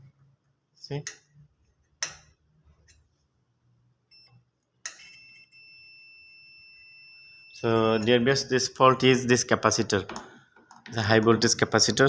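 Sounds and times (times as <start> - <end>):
multimeter continuity beep: 4.1 - 8.5.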